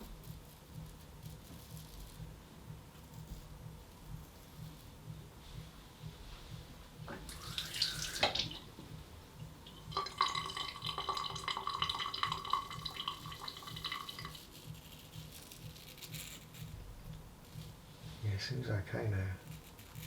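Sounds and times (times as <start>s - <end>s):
tap water running into sink: 7.1s - 8.7s, 9.7s - 14.4s.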